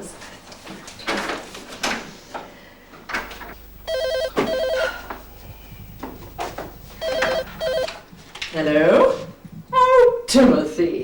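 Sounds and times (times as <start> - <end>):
telephone ringing: 3.6 - 8.0.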